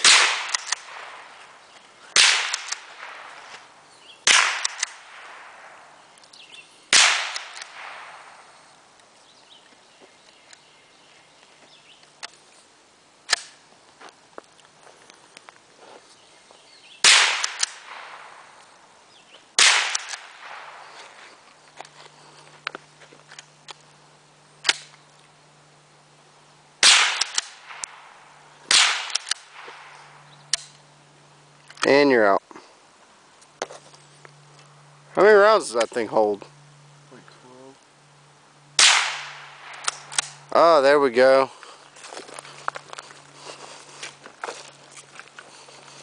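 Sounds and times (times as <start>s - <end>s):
rifle shots with echo: 0.0s - 1.4s, 2.1s - 3.5s, 4.2s - 5.9s, 6.9s - 8.5s, 17.0s - 18.6s, 19.6s - 21.0s, 26.8s - 30.7s, 38.8s - 40.5s
sharp click: 39.7s - 40.5s.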